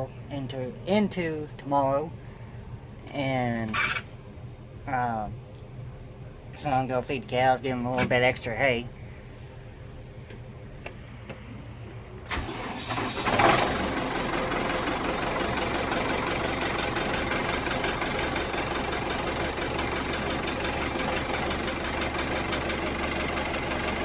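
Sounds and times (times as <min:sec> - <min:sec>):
diesel engine starting and idling: 0:11.1 - 0:24.0
starter motor cranking: 0:12.3 - 0:24.0.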